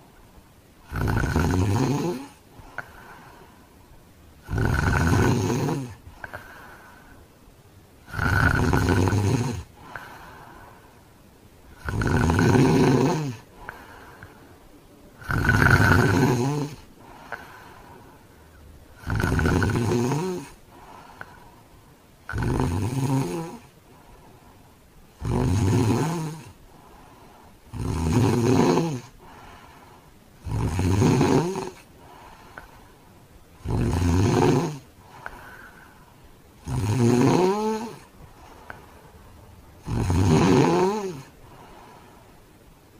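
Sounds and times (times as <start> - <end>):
quiet breathing: 0.0 - 42.9
man snoring heavily: 0.8 - 3.2, 4.4 - 6.7, 8.1 - 10.7, 11.8 - 14.4, 15.2 - 18.0, 19.0 - 21.4, 22.3 - 23.7, 25.2 - 26.6, 27.7 - 29.7, 30.4 - 32.7, 33.6 - 35.8, 36.6 - 38.1, 39.8 - 41.8.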